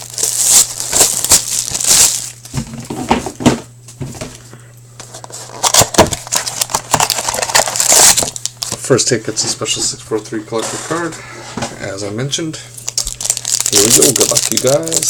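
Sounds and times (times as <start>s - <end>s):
plastic wrapping crinkling and tearing: 0.0s - 2.9s, 5.1s - 8.8s, 12.8s - 15.0s.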